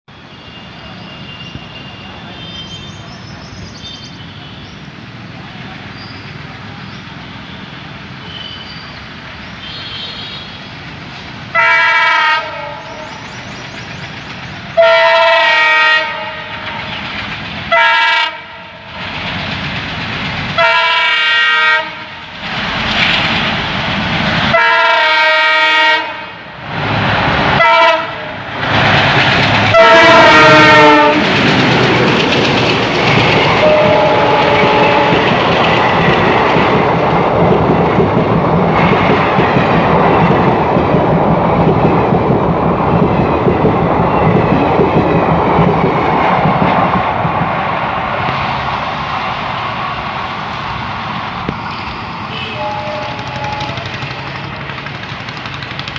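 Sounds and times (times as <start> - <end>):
locomotive horn blasts: 9.6 - 10.6, 11.6 - 13.2, 14.8 - 16.5, 17.7 - 18.6, 20.6 - 22.2, 24.5 - 26.4, 27.6 - 28.3, 29.7 - 31.3, 33.6 - 35.3, 52.3 - 54.0
locomotive running noise: 12.6 - 25.1, 26.8 - 55.9
wheels clattering on rails: 13.1 - 14.8, 16.2 - 17.8, 18.9 - 21.1, 21.8 - 24.6, 28.6 - 49.6, 50.5 - 55.9.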